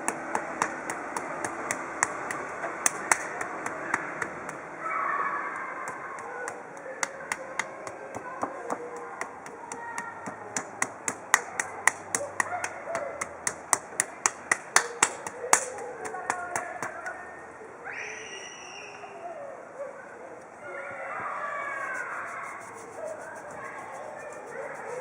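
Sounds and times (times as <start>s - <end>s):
crisp hand clicks: 0.0s - 4.7s, 5.6s - 17.2s.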